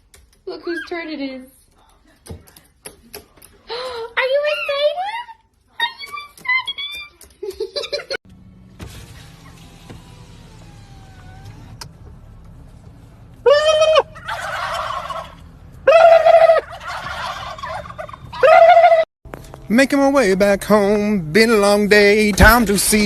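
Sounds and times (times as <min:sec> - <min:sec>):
turkey gobbling: 0:13.4 - 0:19.0.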